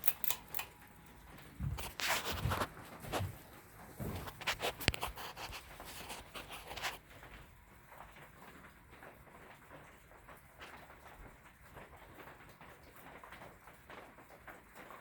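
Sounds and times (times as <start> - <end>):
ceiling fan whooshing: 1.5 - 7.0.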